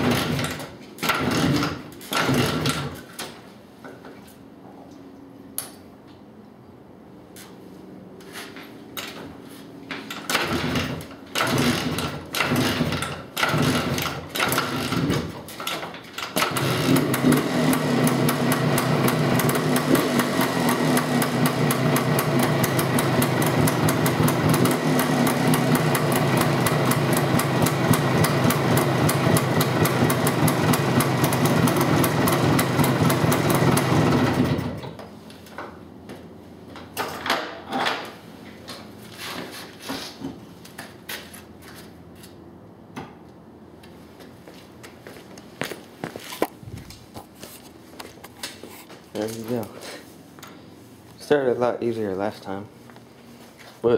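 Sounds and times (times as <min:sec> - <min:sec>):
dirt bike engine starting: 0:00.0 - 0:03.1, 0:10.2 - 0:35.0
engine running with rattling beat: 0:16.4 - 0:34.8.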